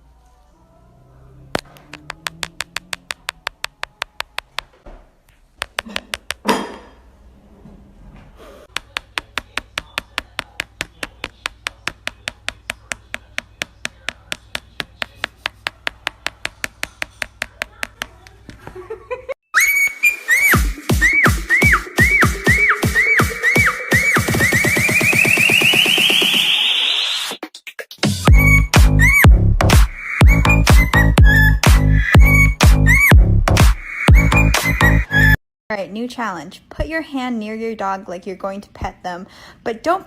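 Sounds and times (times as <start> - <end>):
rapid even tapping: 1.6 - 4.8, 8.7 - 18.4
electronic dance music: 20.1 - 35.4.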